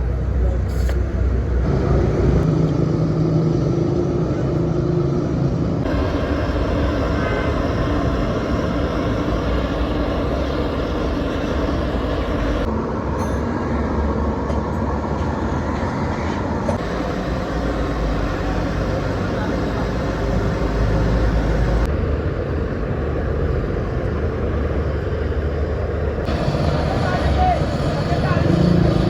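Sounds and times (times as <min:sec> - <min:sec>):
engine running: 0:00.0 - 0:12.8, 0:14.6 - 0:29.0
low hum: 0:01.6 - 0:12.7, 0:16.8 - 0:24.0, 0:25.7 - 0:29.0.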